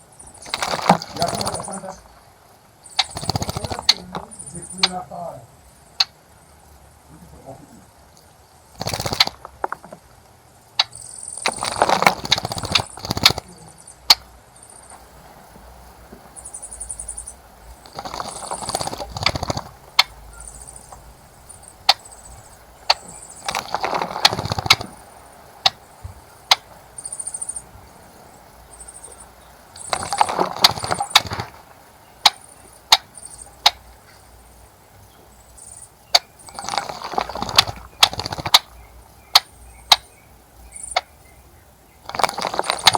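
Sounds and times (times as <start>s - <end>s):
birds splashing in water: 0.0s - 5.2s, 8.1s - 10.2s, 10.8s - 34.8s, 35.5s - 42.9s
sharp single clicks: 2.9s - 5.1s, 6.0s - 6.2s, 8.1s - 10.0s, 10.8s - 15.0s, 17.8s - 25.8s, 26.4s - 27.6s, 29.8s - 34.1s, 36.1s - 41.1s.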